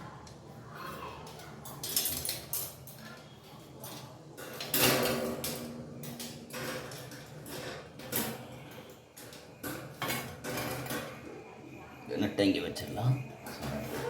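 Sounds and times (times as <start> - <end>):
metal fan parts clinking: 0.8 - 11.8.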